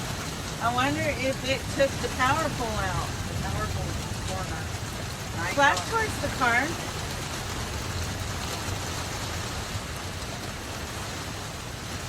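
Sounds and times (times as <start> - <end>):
low even rumble: 0.0 - 8.5
steady rain falling: 0.0 - 12.0.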